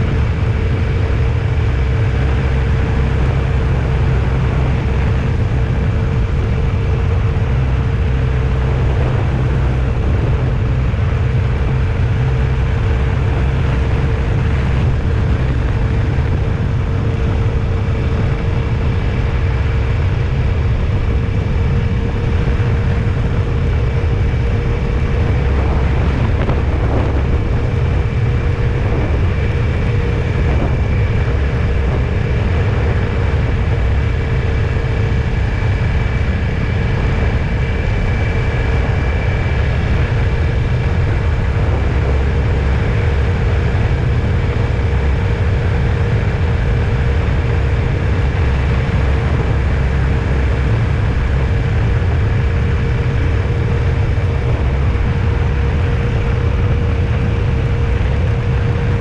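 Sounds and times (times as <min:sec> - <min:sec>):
faint steady whine: 0:00.0 - 0:59.0
vehicle engine and road rumble: 0:00.0 - 0:59.0.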